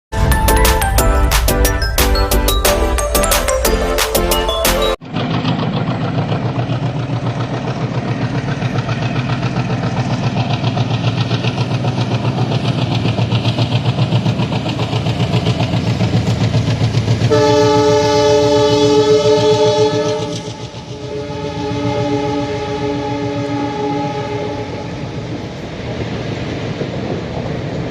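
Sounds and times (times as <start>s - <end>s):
diesel locomotive running: 0.1s - 27.9s
locomotive horn: 17.2s - 25.3s.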